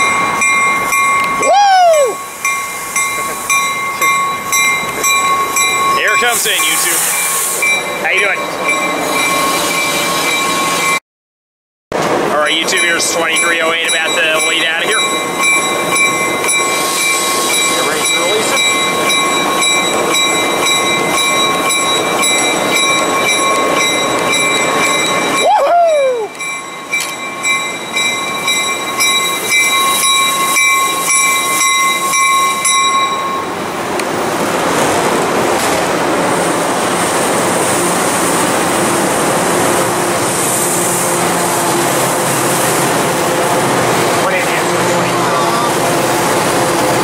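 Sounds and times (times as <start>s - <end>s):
train bell ringing: 0.0s - 11.0s, 12.3s - 34.0s
train rolling past: 0.0s - 11.0s, 11.9s - 47.0s.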